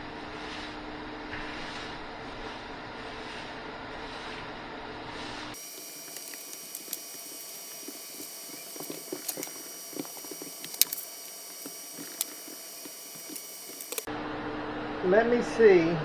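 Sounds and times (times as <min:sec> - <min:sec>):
faint steady hiss: 0:05.6 - 0:14.1.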